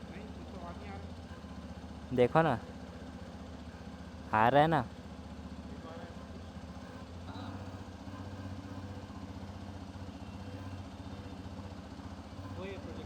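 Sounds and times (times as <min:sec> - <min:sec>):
motorcycle engine idling: 0:00.0 - 0:13.0
buzzing vibration: 0:05.3 - 0:13.0.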